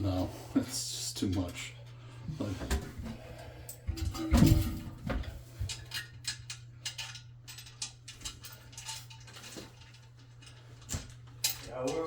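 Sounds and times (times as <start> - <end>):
tools clicking and clinking: 5.7 - 12.0.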